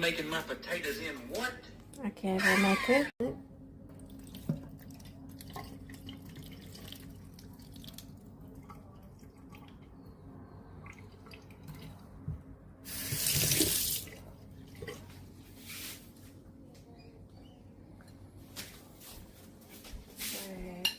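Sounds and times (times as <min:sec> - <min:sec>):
kitchen tap running: 0:03.9 - 0:09.8, 0:12.8 - 0:14.2.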